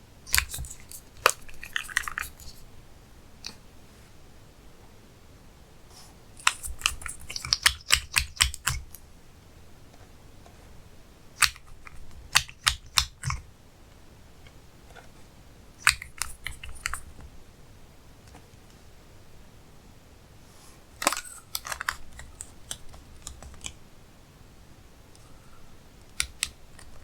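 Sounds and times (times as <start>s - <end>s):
slime clicking and popping: 6.4s - 8.8s.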